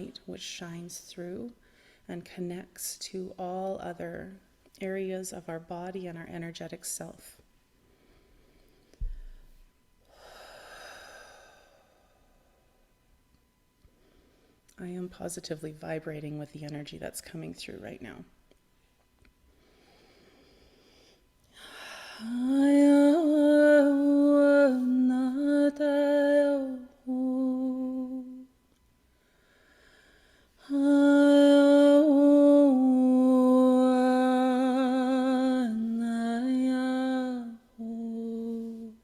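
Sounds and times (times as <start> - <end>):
woman singing wordless held notes: 21.6 - 28.5, 30.6 - 39.0.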